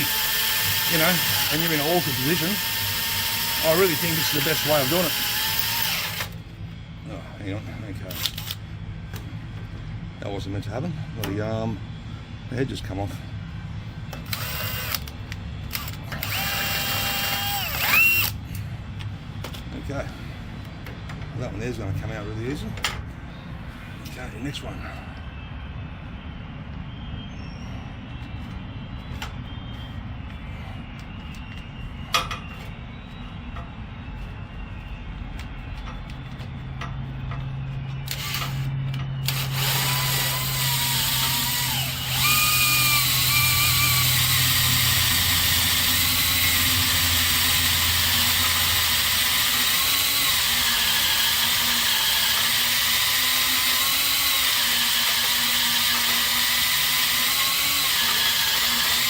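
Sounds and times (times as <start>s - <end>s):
power drill grinding metal: 0.0s - 6.4s, 14.3s - 15.0s, 15.7s - 18.4s, 38.1s - 59.0s.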